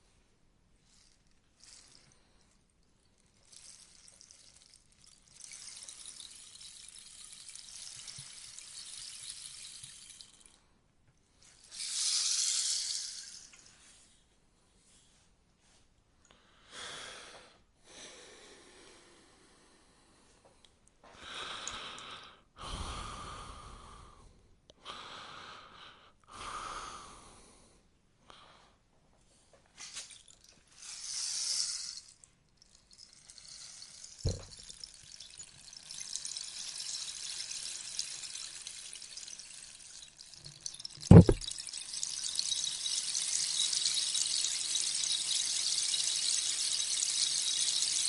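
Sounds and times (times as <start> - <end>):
rainstick beads trickling: 0.8 - 10.6, 11.4 - 13.7, 29.8 - 48.0
thud: 41.1 - 41.5.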